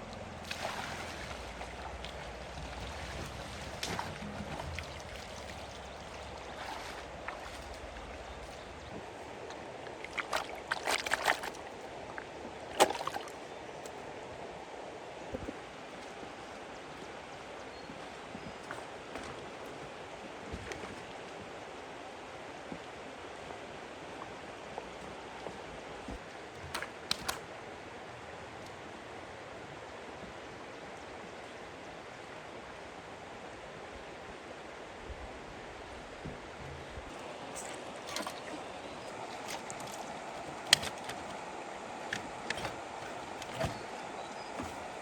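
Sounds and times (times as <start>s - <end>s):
small knocks and splashes: 0.0s - 14.0s, 15.3s - 21.5s, 22.6s - 27.5s, 36.3s - 45.0s
water rushing: 0.0s - 14.1s, 36.8s - 45.0s.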